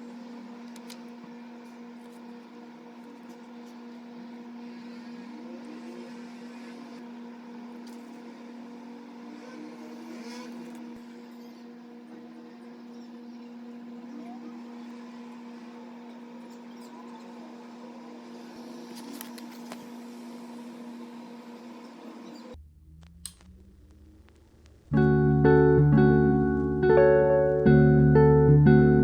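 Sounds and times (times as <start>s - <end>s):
appliance electrical hum: 0.0s - 29.0s.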